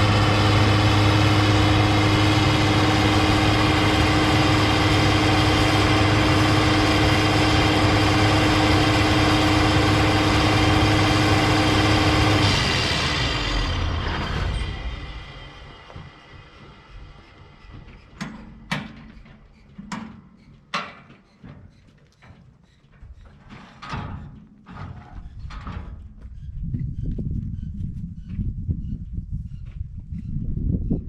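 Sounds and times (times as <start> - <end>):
diesel engine idling: 0.0 - 17.9
engine winding down whine: 0.0 - 19.6.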